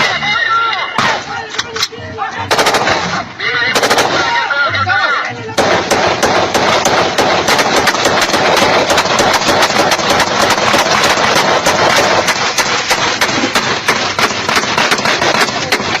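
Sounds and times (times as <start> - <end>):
continuous din: 0.0 - 16.0
rapid gunfire: 2.5 - 4.5, 5.6 - 16.0.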